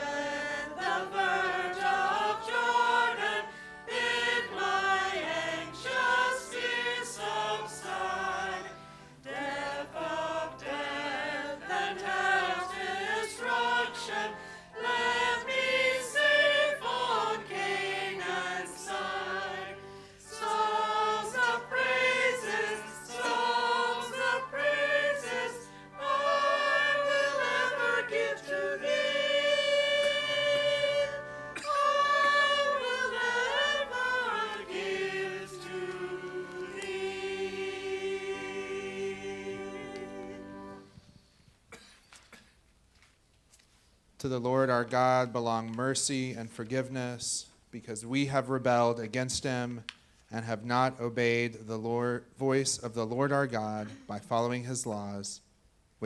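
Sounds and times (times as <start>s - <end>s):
group singing a hymn: 0.0s - 41.0s
low sustained accompanying notes: 0.0s - 41.0s.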